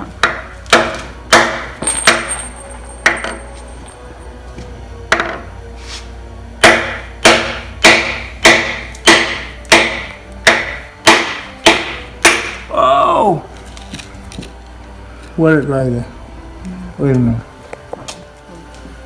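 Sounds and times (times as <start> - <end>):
hammer striking metal: 0.2 - 3.5, 6.6 - 12.7.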